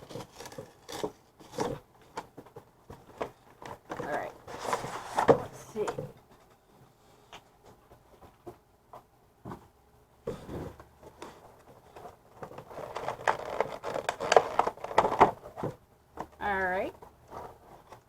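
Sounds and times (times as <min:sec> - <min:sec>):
cardboard box being opened: 0:00.0 - 0:01.9, 0:11.8 - 0:15.6
scraping and rustling: 0:00.0 - 0:08.6, 0:10.3 - 0:15.8, 0:16.9 - 0:18.0.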